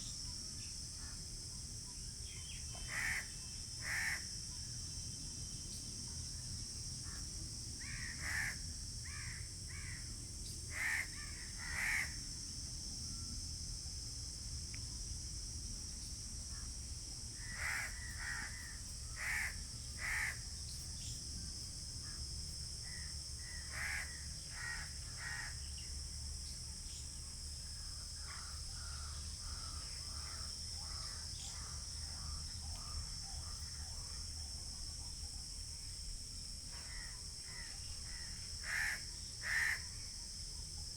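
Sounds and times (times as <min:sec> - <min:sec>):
high insect drone: 0:00.0 - 0:40.9
crows cawing: 0:17.5 - 0:20.4, 0:23.7 - 0:25.5, 0:38.6 - 0:39.8.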